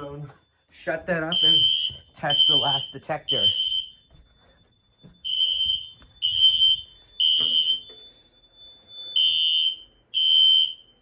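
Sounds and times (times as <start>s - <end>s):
fire alarm beeping: 0.0s - 11.0s.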